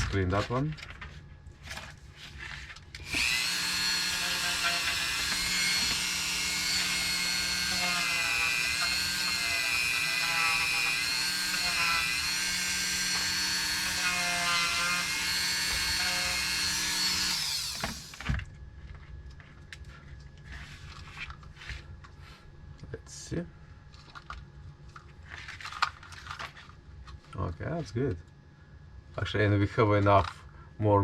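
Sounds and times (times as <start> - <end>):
rotary tool grinding: 3.0 - 18.3.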